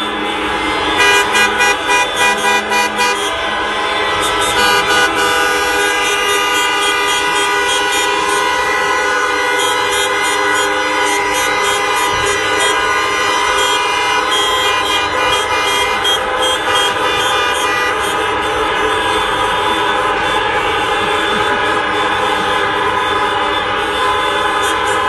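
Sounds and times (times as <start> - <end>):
car horns sounding together: 0.0 - 25.0
car horn tooting quick blasts: 0.2 - 3.4, 4.0 - 25.0.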